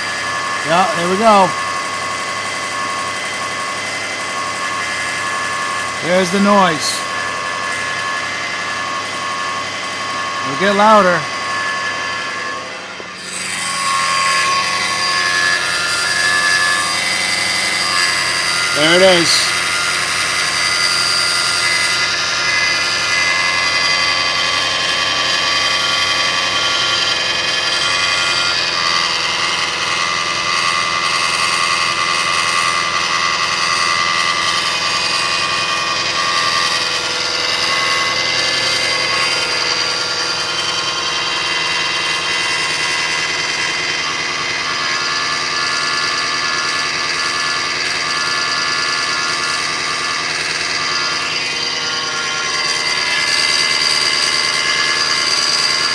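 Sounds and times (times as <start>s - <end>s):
high-pitched engine whine: 0.0s - 26.4s.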